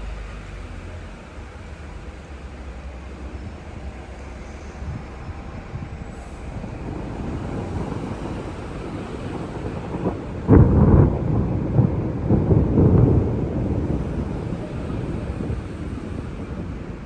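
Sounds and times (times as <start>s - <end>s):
thunder rumbling and clapping: 4.8s - 17.0s.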